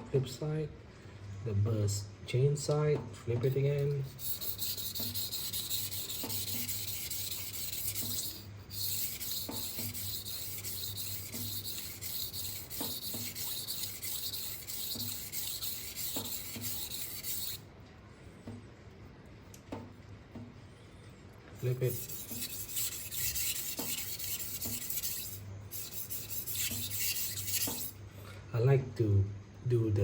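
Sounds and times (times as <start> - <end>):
knife scraping on whetstone: 3.4 - 17.6, 21.6 - 28.0.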